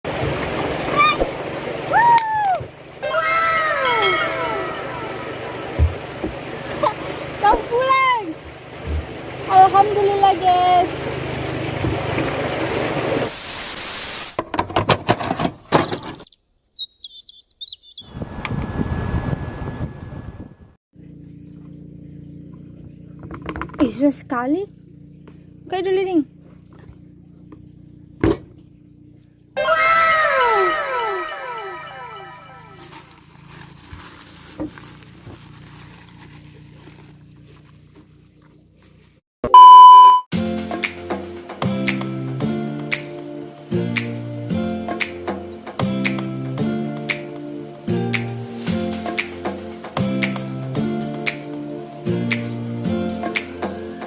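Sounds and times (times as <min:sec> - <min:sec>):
small bird chirping: 0:16.2 - 0:18.1
loud steady beep: 0:39.5 - 0:40.3
music: 0:40.3 - 0:54.0.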